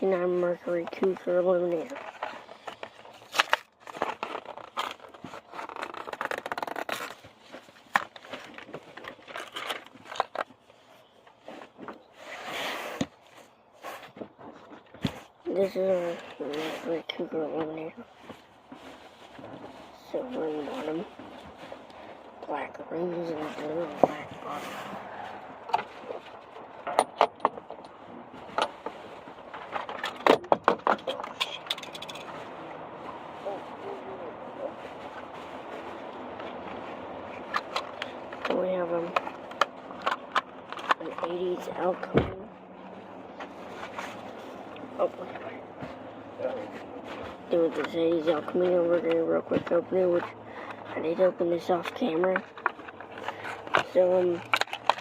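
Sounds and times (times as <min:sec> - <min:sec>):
plastic crinkling: 0:01.9 - 0:11.0, 0:51.8 - 0:55.0
card tearing: 0:03.2 - 0:07.2
toy car and packaging clicks: 0:51.6 - 0:55.0.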